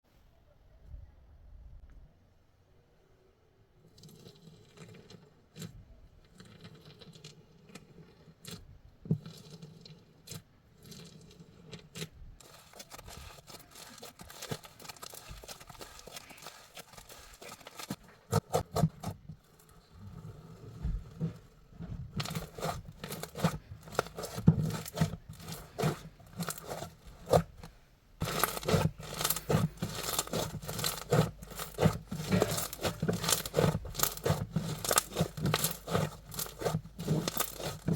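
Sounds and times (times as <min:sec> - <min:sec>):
crunchy slime crackling and popping: 0:11.9 - 0:19.1, 0:21.8 - 0:37.9.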